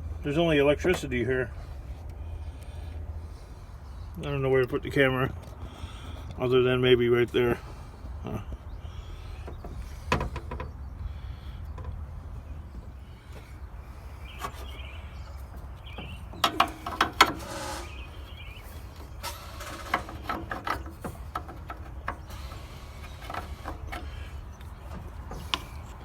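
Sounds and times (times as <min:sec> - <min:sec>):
metal tools clicking and clanking: 0:16.0 - 0:18.0.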